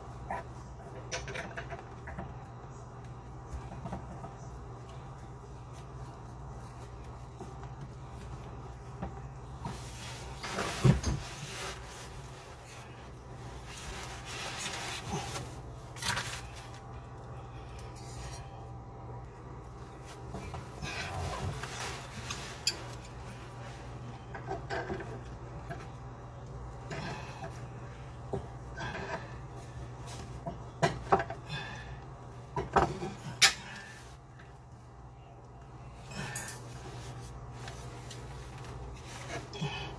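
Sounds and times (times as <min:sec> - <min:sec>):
steady low hum: 0:00.0 - 0:39.9.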